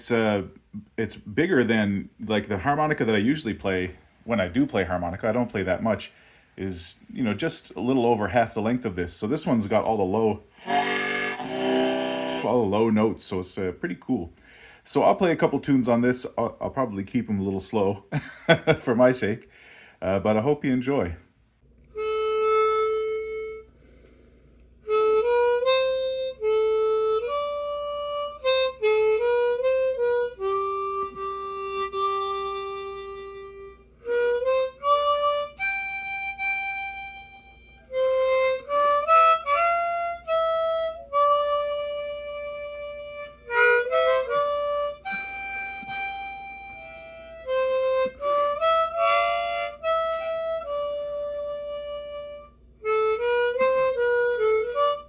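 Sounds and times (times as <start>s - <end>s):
breaths between phrases: 6.1s - 6.6s, 14.3s - 14.9s, 19.5s - 20.0s
low harmonica playing dance tune: 10.6s - 12.7s, 21.9s - 55.0s.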